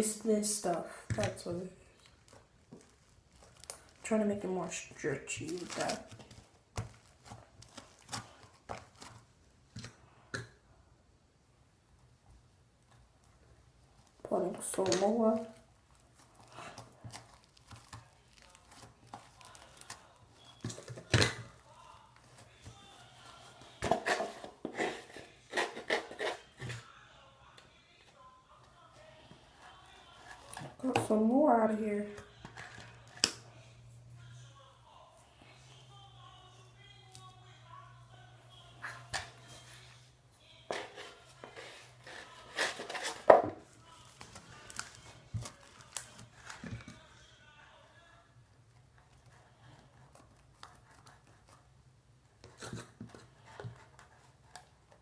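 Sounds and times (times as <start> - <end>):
slime being kneaded: 0.6 - 10.0, 13.0 - 24.1
rustling: 1.8 - 10.1, 12.8 - 27.0.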